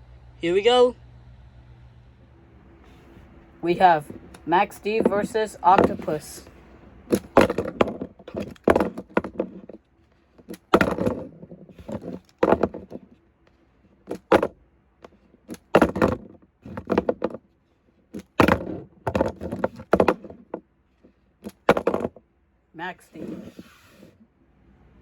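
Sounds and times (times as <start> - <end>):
toy trucks clattering: 3.7 - 17.4, 18.0 - 22.2.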